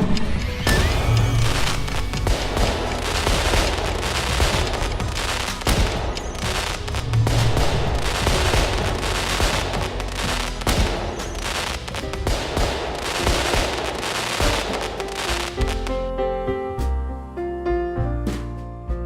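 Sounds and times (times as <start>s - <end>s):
fireworks bangs and crackles: 0.0s - 16.1s
deep firework booms: 0.7s - 16.1s.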